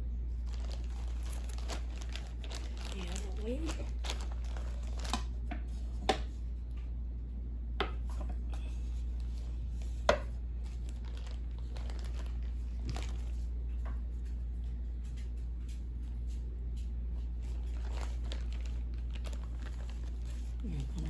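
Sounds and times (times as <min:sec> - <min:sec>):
steady low hum: 0:00.0 - 0:21.0
plastic crinkling: 0:00.3 - 0:06.0, 0:10.6 - 0:13.5, 0:17.3 - 0:21.0.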